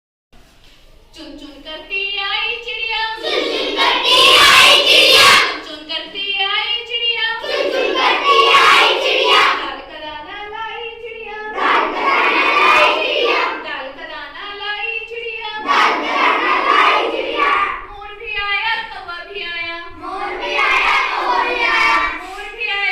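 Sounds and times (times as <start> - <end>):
children chanting in unison: 3.2 - 5.6, 7.4 - 9.8, 11.4 - 13.7, 15.6 - 17.9, 20.0 - 22.4.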